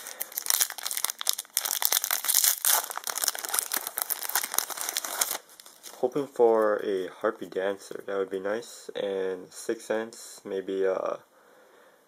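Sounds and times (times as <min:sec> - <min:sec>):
foil wrapper crinkling and tearing: 0:00.0 - 0:06.0.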